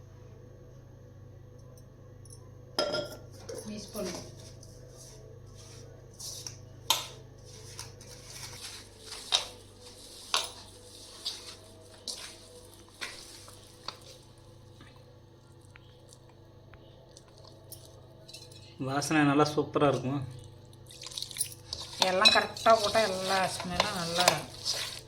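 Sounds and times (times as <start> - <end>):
soft stirring: 3.3 - 18.9, 19.8 - 25.0
utensil clinking on bowl: 21.0 - 25.0.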